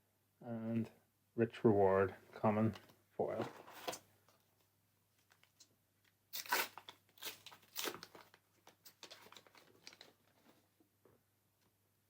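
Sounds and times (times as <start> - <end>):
foil wrapper ripping: 6.3 - 10.1
foil wrapper crinkling: 6.3 - 10.2.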